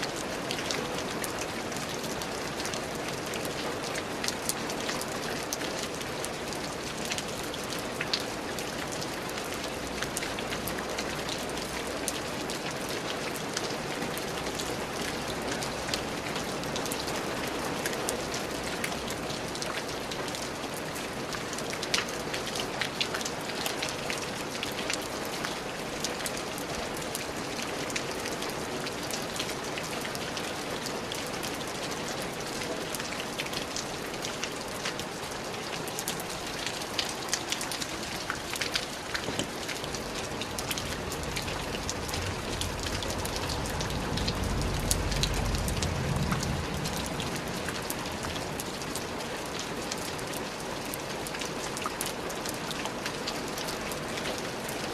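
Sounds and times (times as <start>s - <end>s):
steady rain: 0.0s - 54.9s
low rumble: 40.4s - 48.2s.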